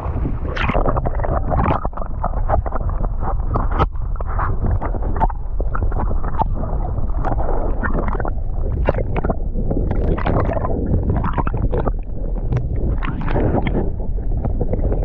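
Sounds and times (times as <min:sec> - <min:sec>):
sea water splashing: 0:00.0 - 0:15.0
wind rumble on microphone: 0:00.0 - 0:15.0.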